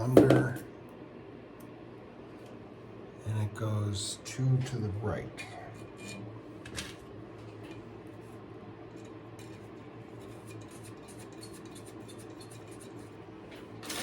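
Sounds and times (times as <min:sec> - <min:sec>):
clicks and scratches of metal spokes: 0:08.9 - 0:14.0.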